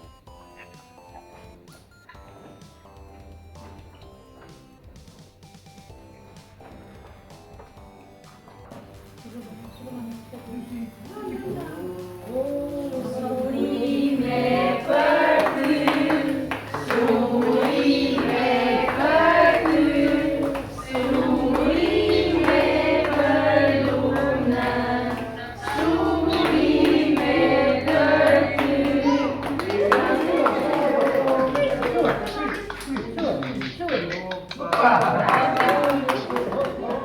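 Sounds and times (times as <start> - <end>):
musical accompaniment: 0.0 - 34.7
voices singing together: 9.4 - 33.6.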